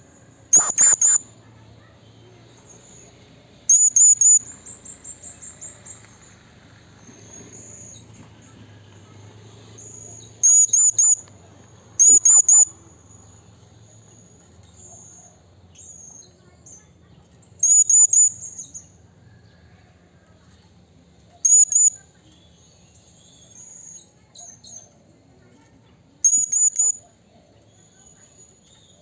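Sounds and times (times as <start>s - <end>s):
parrot calling high sharp notes: 0.5s - 1.2s, 3.7s - 4.4s.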